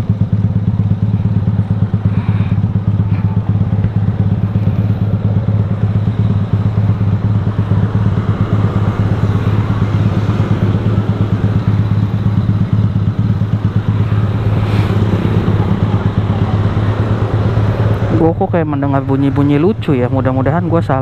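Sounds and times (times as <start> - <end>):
motorcycle engine running: 0.0 - 21.0.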